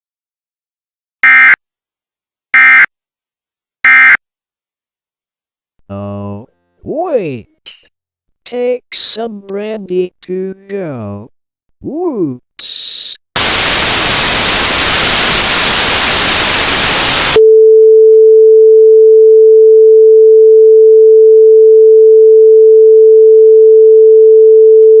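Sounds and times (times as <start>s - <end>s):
loud hissing static: 13.4s - 17.4s
steady sine test tone: 13.4s - 17.4s.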